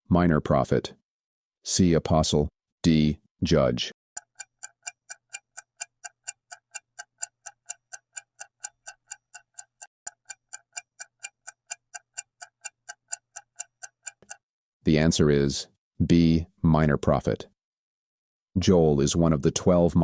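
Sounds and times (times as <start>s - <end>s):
clock ticking: 4.2s - 14.4s.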